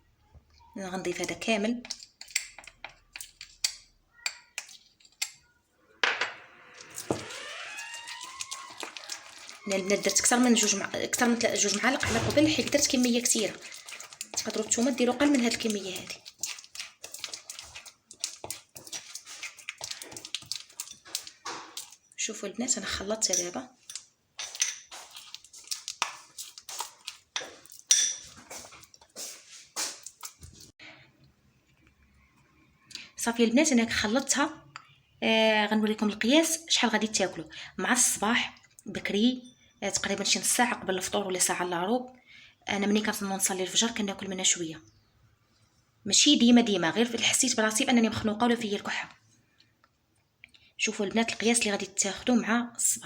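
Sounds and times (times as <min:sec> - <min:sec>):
spoon scraping and clicking in bowl: 0:01.2 - 0:05.4, 0:07.8 - 0:22.1, 0:23.2 - 0:29.1.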